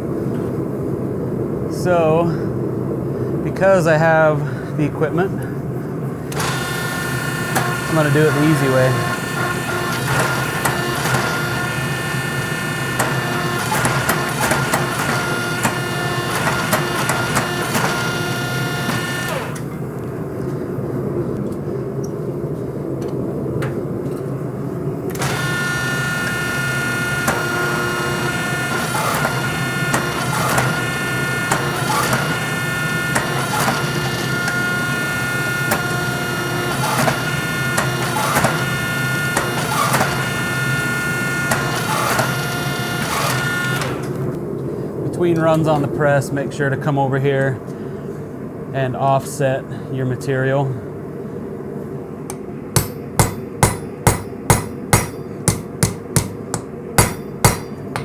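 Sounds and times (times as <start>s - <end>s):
forging press humming: 0.0s - 46.1s, 51.0s - 58.0s
sharp metal clanks: 52.3s - 58.0s.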